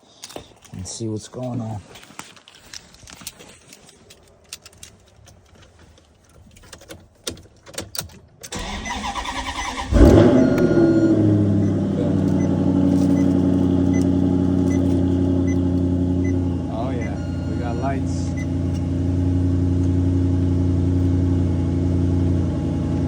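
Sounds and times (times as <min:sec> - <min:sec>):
engine starter cranking: 0:07.3 - 0:14.9
car engine revving and idling: 0:08.6 - 0:23.0.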